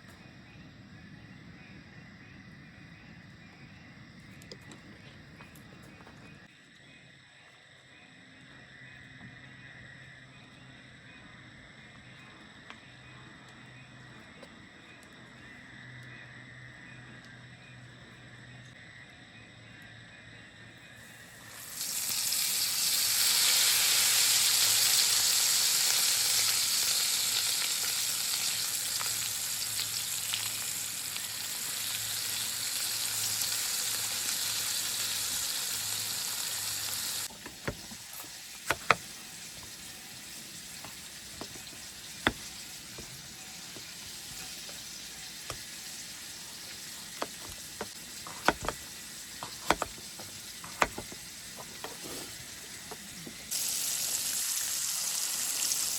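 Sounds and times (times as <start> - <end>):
fish sizzling in hot oil: 21.4 - 55.9.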